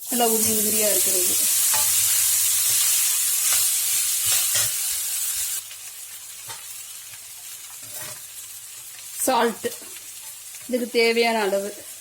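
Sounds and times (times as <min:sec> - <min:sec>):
rice sizzling in a frying pan: 0:00.0 - 0:12.0
spatula scraping a pan: 0:00.3 - 0:05.6, 0:07.6 - 0:08.4.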